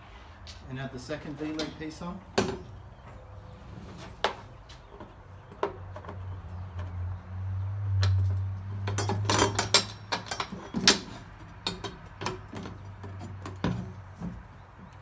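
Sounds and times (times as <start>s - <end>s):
metal parts clinking and knocking: 8.0s - 13.8s.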